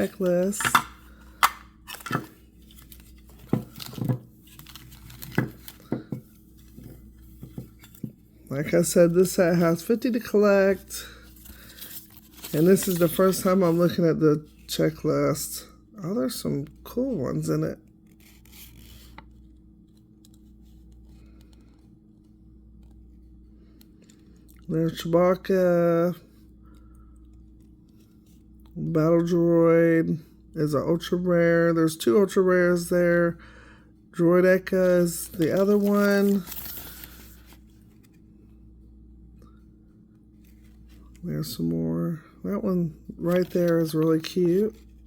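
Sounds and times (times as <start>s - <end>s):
low steady hum: 0.0s - 45.0s
paper rustling: 1.9s - 14.0s, 35.0s - 38.2s, 43.1s - 45.0s.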